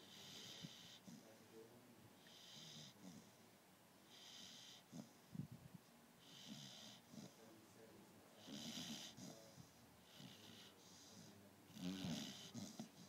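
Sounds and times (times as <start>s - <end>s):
dog snorting: 0.0s - 1.3s, 2.2s - 3.4s, 4.1s - 5.2s, 6.2s - 7.4s, 8.4s - 13.0s
dog snoring softly: 0.0s - 5.4s, 6.2s - 13.0s.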